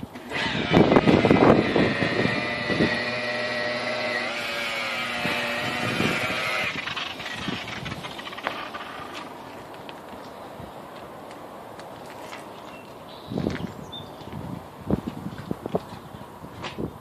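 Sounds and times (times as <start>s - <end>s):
rotary polisher whining: 0.1s - 9.6s
polisher bumping: 0.2s - 9.6s.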